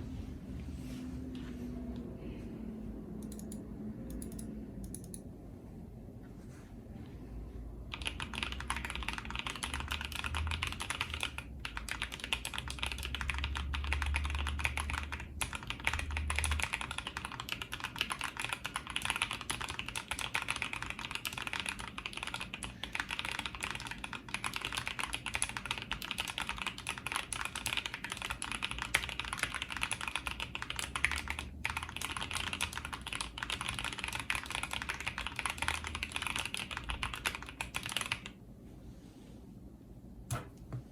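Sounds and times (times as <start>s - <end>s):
mechanical keyboard typing: 3.2s - 5.2s, 7.9s - 38.4s.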